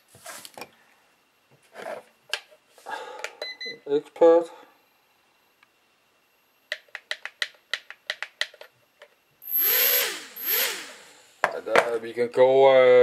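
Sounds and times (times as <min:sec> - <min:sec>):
drone motors whirring: 0:09.4 - 0:11.4.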